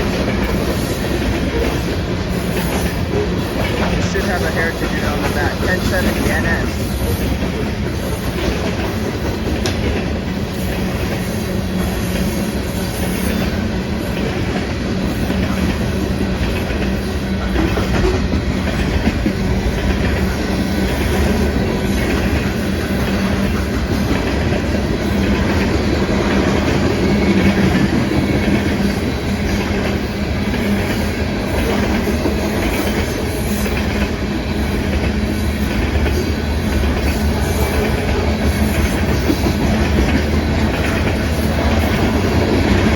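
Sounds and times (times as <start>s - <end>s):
train wheels rolling on rails: 0.0s - 42.9s.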